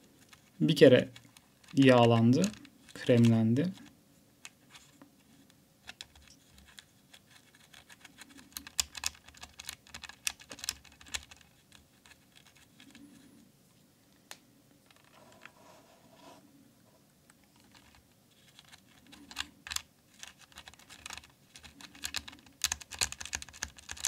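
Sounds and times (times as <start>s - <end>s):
mechanical keyboard clicking: 7.8s - 11.4s, 19.3s - 24.0s.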